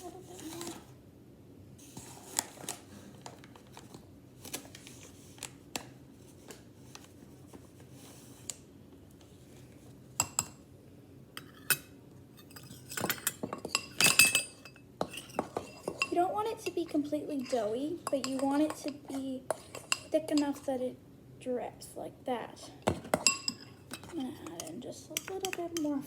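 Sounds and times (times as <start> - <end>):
spoon clinking against bowl: 23.1 - 25.9.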